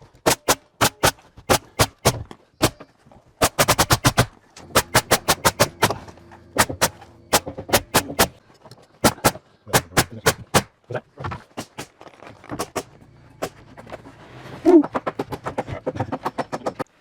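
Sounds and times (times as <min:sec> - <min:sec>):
hammer striking nails into wood: 0:00.2 - 0:02.8, 0:03.4 - 0:06.0, 0:06.6 - 0:08.4, 0:09.0 - 0:10.7
low steady hum: 0:04.4 - 0:09.0.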